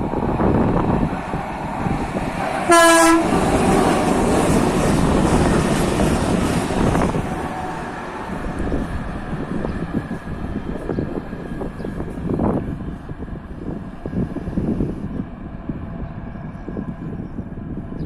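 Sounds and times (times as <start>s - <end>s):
train passing: 0.0s - 18.0s
train horn blast: 2.6s - 4.3s.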